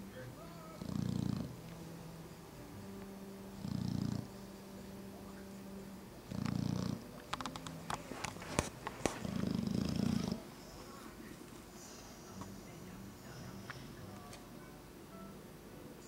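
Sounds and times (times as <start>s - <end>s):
puppy snoring: 0.7s - 2.1s, 3.5s - 10.9s.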